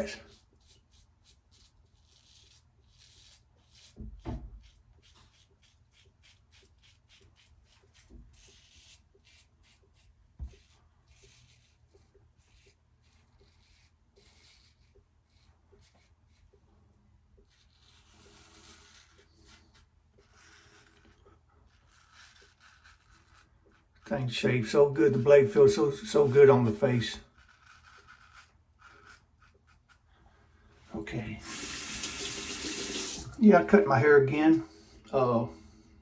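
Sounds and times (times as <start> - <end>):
razor blade scraping stubble: 17.4 - 24.0, 27.2 - 30.1.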